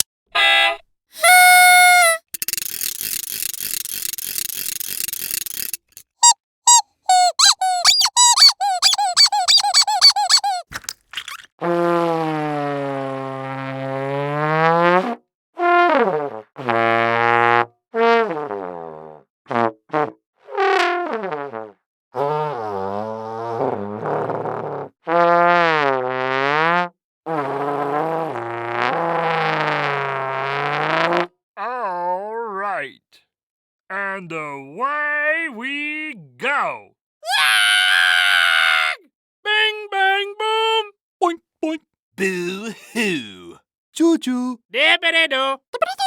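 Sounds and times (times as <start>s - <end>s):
buzzing rattle: 2.3s - 6.1s.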